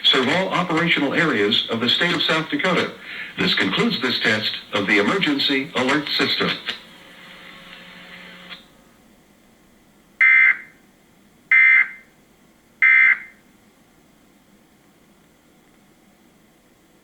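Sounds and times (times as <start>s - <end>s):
faint hiss: 0.0s - 7.8s.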